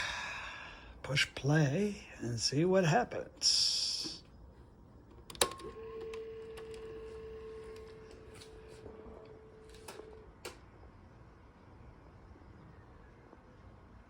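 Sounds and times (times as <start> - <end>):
faint hiss: 3.4 - 4.3.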